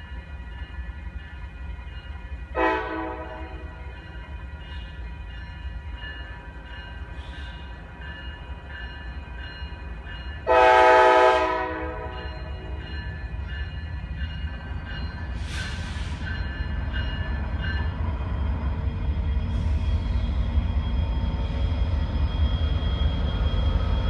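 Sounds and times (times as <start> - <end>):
passing train rumble: 0.0 - 24.0
train air horn blasts: 2.6 - 3.6, 10.5 - 12.2.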